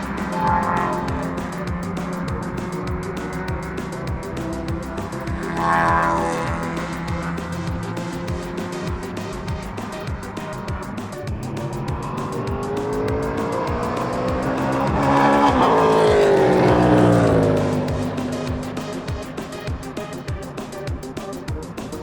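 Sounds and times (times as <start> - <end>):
race car passing by: 0.0 - 9.0, 11.4 - 19.6
music with steady beat: 0.0 - 22.0.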